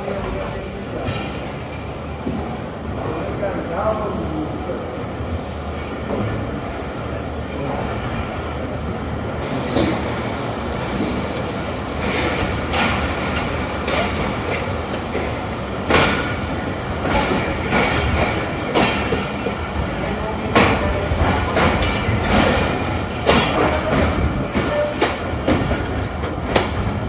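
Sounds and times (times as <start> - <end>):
train coach rumbling: 0.0 - 27.0
wheels clacking over rail joints: 9.4 - 27.0.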